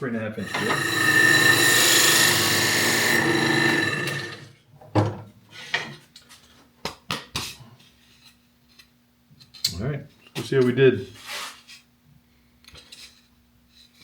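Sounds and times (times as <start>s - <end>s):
drill cutting through wood: 0.4s - 4.5s.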